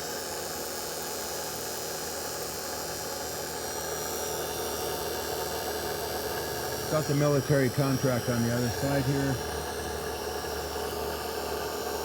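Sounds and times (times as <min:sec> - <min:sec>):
electric motor whirring: 0:05.8 - 0:10.0.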